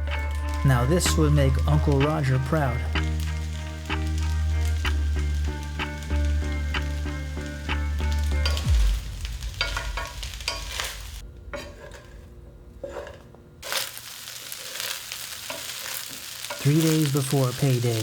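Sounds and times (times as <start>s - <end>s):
background music: 0.0s - 11.6s
fried rice sizzling in a pan: 0.0s - 12.2s, 12.8s - 18.0s
spatula scraping and tapping pan: 11.5s - 17.4s.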